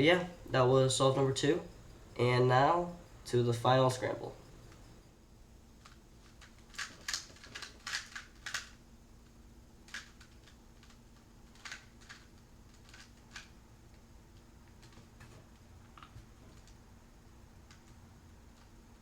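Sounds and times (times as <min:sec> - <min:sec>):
puzzle cube clicking: 0:05.8 - 0:08.8, 0:09.9 - 0:13.5.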